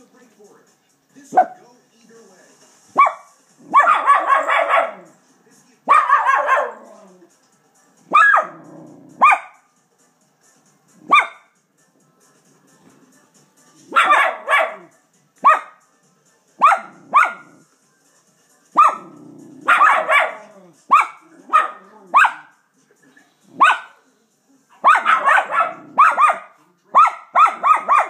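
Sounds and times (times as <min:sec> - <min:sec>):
dog barking: 0:01.3 - 0:01.6, 0:03.0 - 0:05.1, 0:05.9 - 0:07.2, 0:08.1 - 0:09.7, 0:11.0 - 0:11.5, 0:13.9 - 0:15.8, 0:16.6 - 0:17.6, 0:18.8 - 0:22.6, 0:23.5 - 0:24.0, 0:24.8 - 0:28.0.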